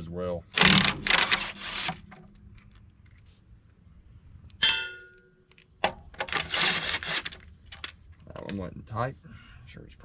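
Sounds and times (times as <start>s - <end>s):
metal-on-metal clang: 4.5s - 5.4s.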